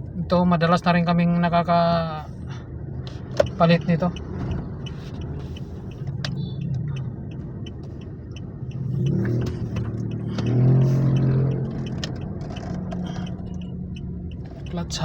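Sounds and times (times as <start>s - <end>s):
diesel car engine running: 0.0s - 15.0s
faint light ticking: 2.3s - 15.0s.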